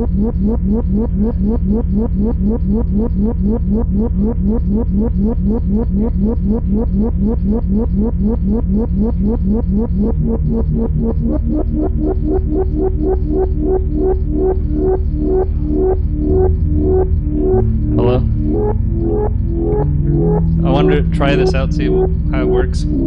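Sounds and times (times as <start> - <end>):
low drone: 11.0 - 23.0
held higher notes: 13.6 - 23.0.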